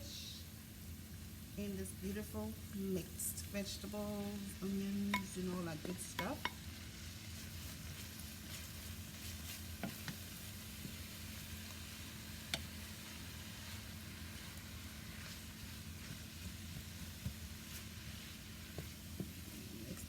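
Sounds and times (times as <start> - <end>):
food sizzling in oil: 0.0 - 20.0
utensil clicking against pan: 12.5 - 12.7.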